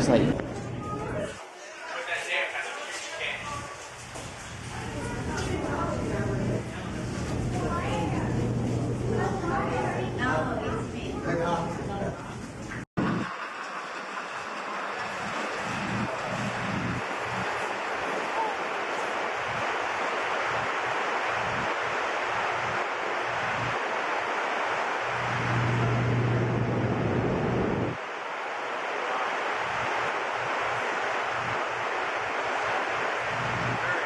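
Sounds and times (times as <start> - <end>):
machinery roar and moving air: 4.0 - 34.0
low hum: 18.5 - 28.5.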